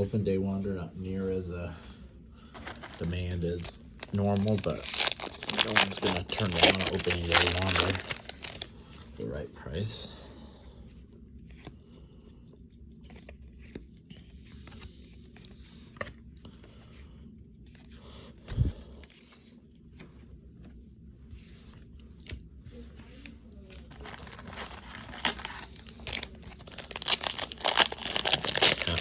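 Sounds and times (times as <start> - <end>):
wrapper tearing and crinkling: 2.6 - 8.7, 23.9 - 29.0.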